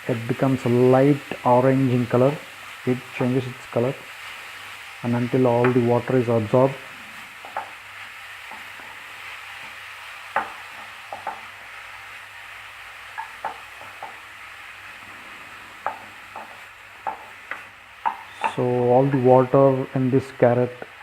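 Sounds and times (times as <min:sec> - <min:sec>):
carrot sizzling in pan: 0:00.0 - 0:21.0
spatula knocking against pan: 0:07.4 - 0:07.8, 0:10.3 - 0:11.5, 0:13.2 - 0:14.2, 0:15.8 - 0:18.2.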